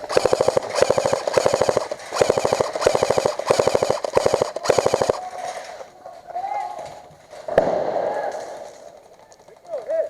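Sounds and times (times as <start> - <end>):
airsoft rifle firing bursts: 0.0 - 5.4.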